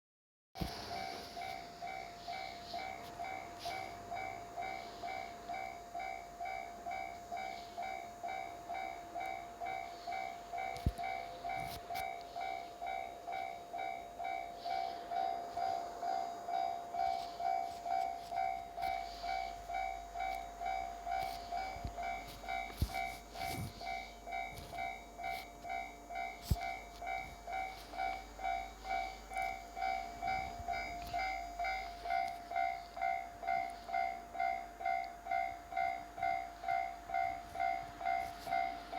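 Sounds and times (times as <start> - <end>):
level crossing warning bell: 0.6 - 38.9
train rumble: 0.6 - 38.9.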